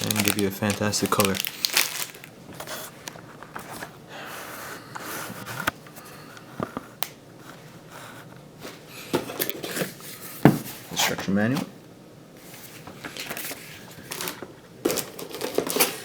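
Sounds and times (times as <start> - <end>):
packaging rustling: 0.0 - 5.8, 12.7 - 16.0.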